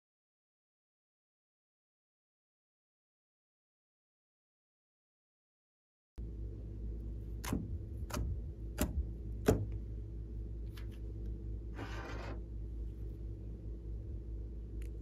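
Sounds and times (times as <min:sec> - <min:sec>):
steady low hum: 0:06.2 - 0:15.0.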